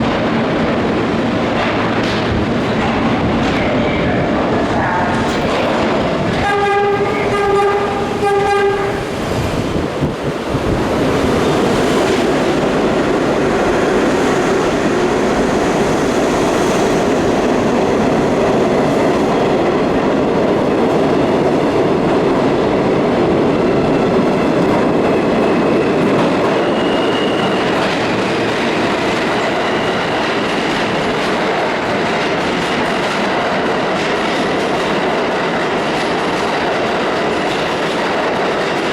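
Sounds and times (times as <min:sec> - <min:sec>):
train rumbling past: 0:00.0 - 0:38.9
train horn blasts: 0:06.4 - 0:09.0
high wheel squeal: 0:26.6 - 0:27.8.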